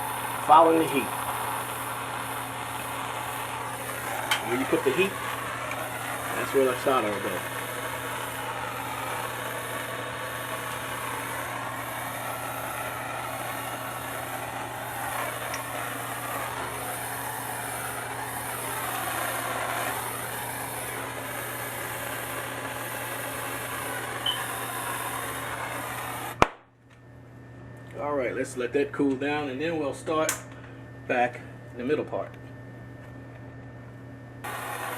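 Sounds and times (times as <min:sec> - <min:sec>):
gas torch hissing: 0:00.0 - 0:26.5, 0:34.4 - 0:34.9.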